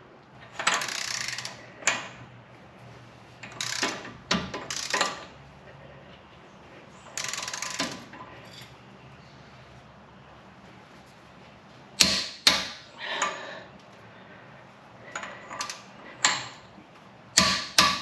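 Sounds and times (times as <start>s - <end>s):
torque wrench click: 0.6s - 1.6s
torque wrench ratcheting: 0.6s - 1.6s, 3.5s - 5.2s, 7.2s - 8.0s.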